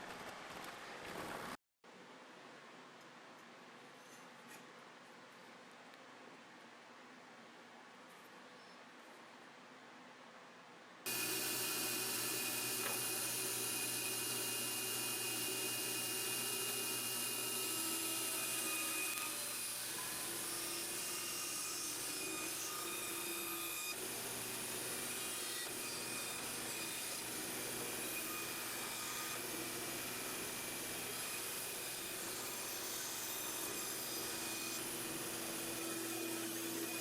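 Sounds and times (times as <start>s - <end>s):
belt grinder whining: 11.1s - 37.0s.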